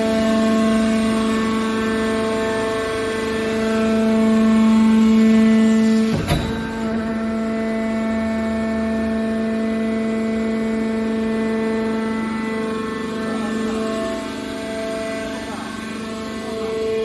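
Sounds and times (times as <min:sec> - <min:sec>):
hydraulic power unit humming: 0:03.5 - 0:09.1
sharp knock: 0:06.1 - 0:07.5.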